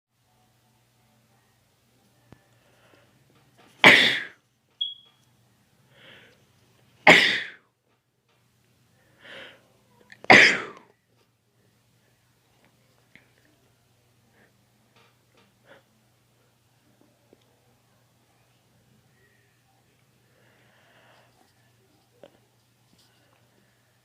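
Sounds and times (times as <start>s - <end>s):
man sneezing: 3.8s - 4.3s, 7.1s - 7.6s, 10.3s - 10.8s.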